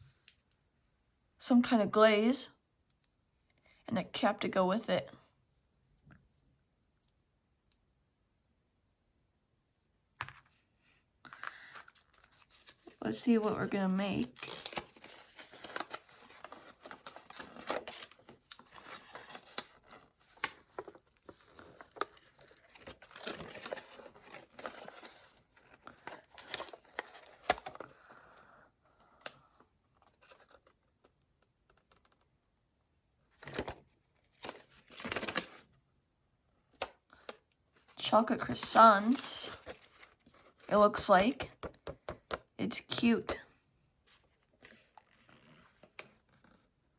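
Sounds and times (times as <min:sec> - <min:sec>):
packaging crinkling and rustling: 0:11.3 - 0:28.0, 0:33.4 - 0:35.7, 0:38.6 - 0:40.7.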